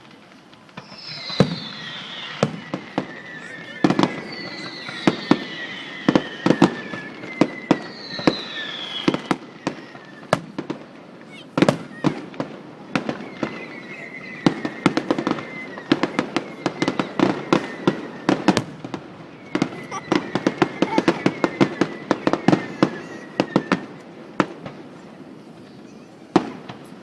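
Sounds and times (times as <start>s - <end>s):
fireworks bangs and pops: 0.0s - 27.0s
whistling fireworks falling: 0.0s - 27.0s.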